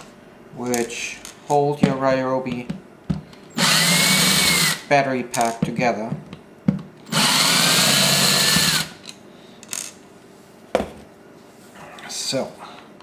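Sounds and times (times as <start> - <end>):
power drill running: 3.5 - 4.9, 7.1 - 9.0.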